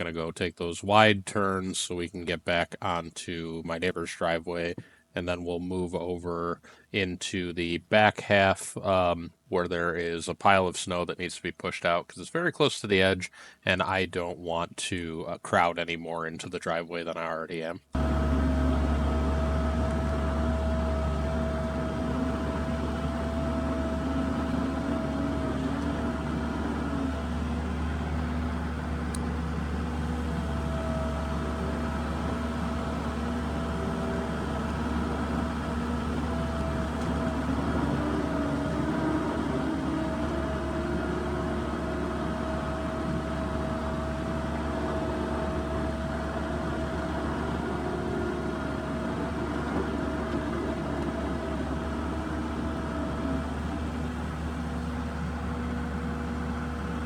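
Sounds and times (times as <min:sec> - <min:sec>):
diesel engine running: 0:18.0 - 0:57.0.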